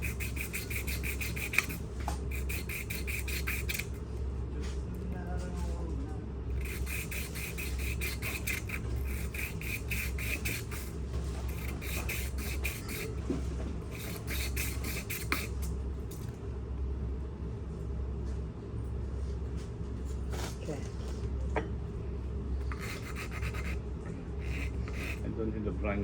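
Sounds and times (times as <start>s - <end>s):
sandpaper scrubbing: 0.0s - 3.9s, 6.6s - 13.2s, 13.9s - 15.5s, 22.7s - 23.8s, 24.4s - 25.2s
steady low hum: 0.0s - 26.0s.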